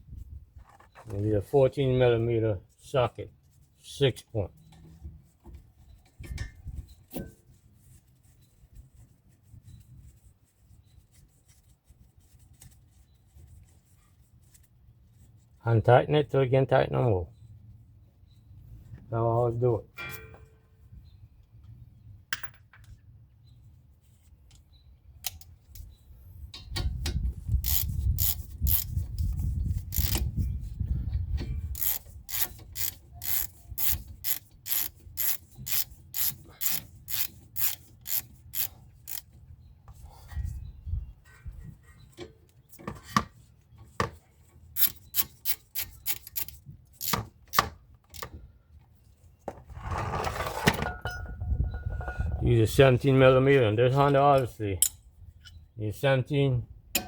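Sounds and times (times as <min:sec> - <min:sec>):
socket ratchet clicking: 0:27.7 - 0:28.9, 0:30.0 - 0:30.2, 0:31.8 - 0:39.2, 0:44.8 - 0:48.2.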